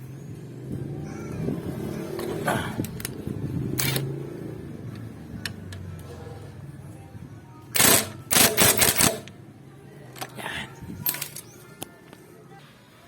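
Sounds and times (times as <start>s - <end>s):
socket wrench ratcheting: 7.8s - 9.3s.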